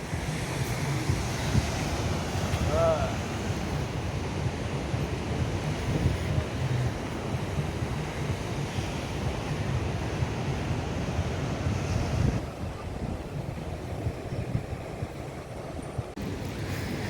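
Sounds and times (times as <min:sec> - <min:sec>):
surf washing on a beach: 0:00.0 - 0:17.0
wind buffeting microphone: 0:00.0 - 0:17.0.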